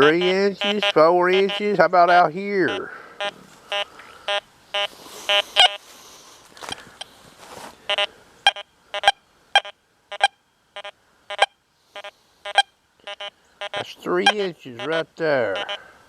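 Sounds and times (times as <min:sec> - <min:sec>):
metal detector beeps: 0:00.0 - 0:05.8, 0:07.9 - 0:15.0, 0:15.6 - 0:15.8
hissy rustle: 0:03.3 - 0:07.8.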